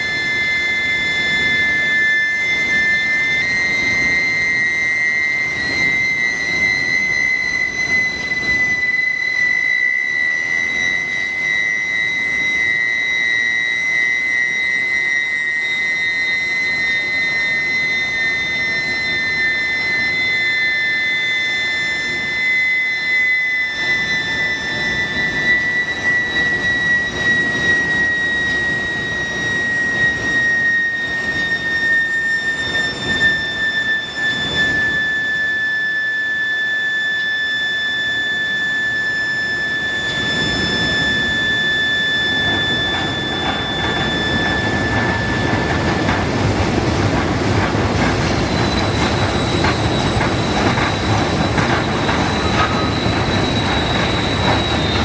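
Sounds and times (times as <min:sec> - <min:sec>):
induction coil high whine: 0:00.0 - 0:55.0
mechanical rumble: 0:40.9 - 0:55.0.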